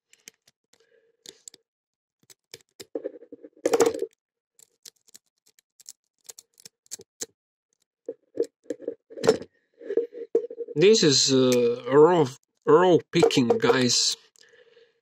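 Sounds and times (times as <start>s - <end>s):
lock pick clicking and scraping: 2.2s - 3.0s, 3.9s - 8.9s.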